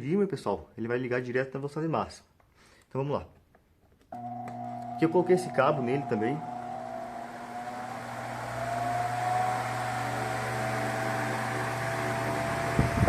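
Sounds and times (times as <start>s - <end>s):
fan motor hum: 4.2s - 13.0s.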